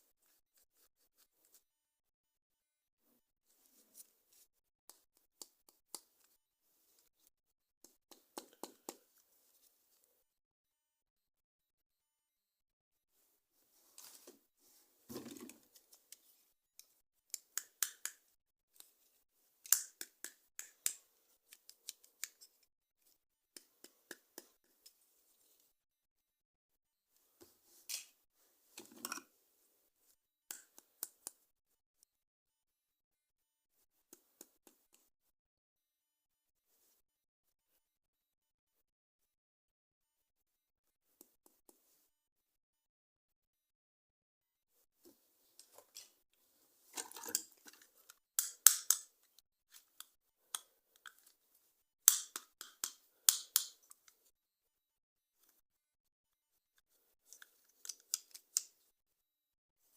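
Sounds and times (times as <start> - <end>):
plastic snaps: 48.4 - 49.1, 52.1 - 53.8.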